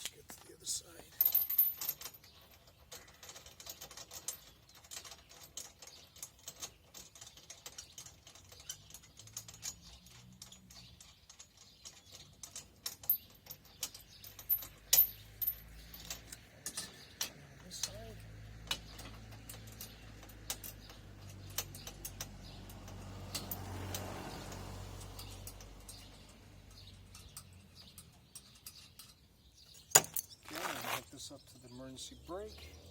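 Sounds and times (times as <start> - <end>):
metal chain clinking and rattling: 1.0 - 31.6.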